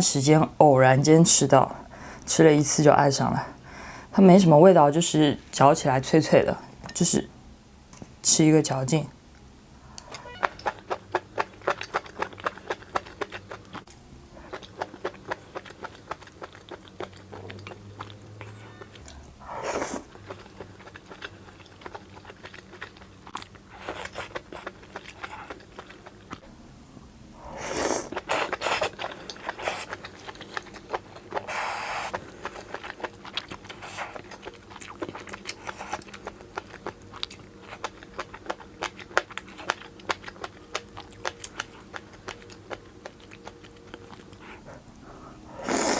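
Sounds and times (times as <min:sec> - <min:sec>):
crunchy chewing: 0:10.0 - 0:26.5, 0:27.6 - 0:45.9.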